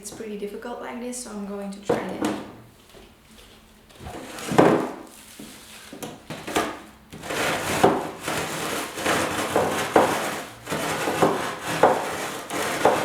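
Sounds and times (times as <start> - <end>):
rolling pin crushing cookies: 4.1 - 13.0.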